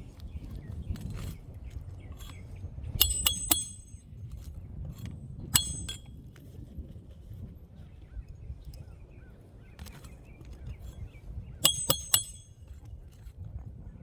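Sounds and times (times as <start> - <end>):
hatchet striking roofing nails: 3.0 - 4.0, 11.7 - 12.6.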